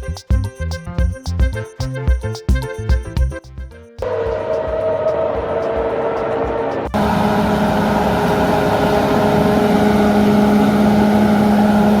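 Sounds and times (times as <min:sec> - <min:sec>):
machine hum with low tone: 0:04.0 - 0:12.0.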